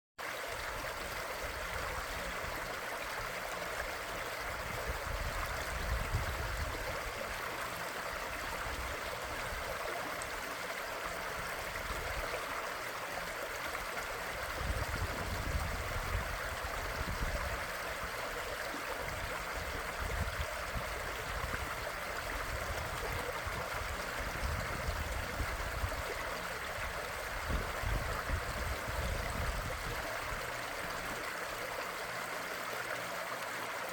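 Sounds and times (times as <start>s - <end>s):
stream water flowing and splashing: 0.2s - 33.9s.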